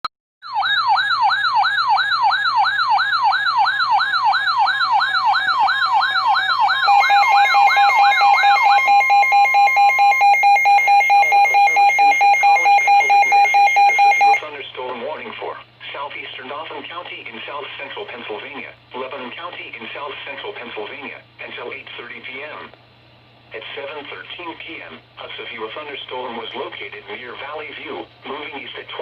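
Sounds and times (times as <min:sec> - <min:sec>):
electronic siren wail: 0:00.4 - 0:14.4.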